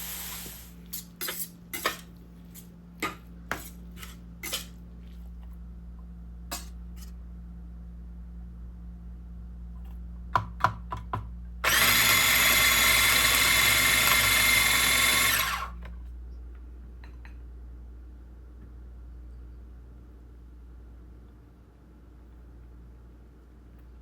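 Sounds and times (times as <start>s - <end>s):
small electric motor whirring: 11.6s - 15.8s.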